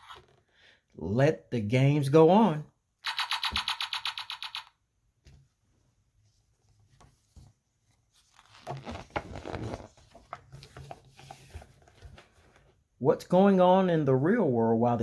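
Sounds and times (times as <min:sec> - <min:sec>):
paper and cardboard rustling: 0:06.3 - 0:12.8.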